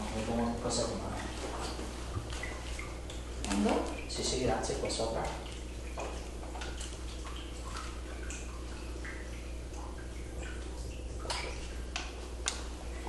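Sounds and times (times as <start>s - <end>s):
steady low hum: 0.0s - 13.0s
light clicks and taps: 11.2s - 12.7s.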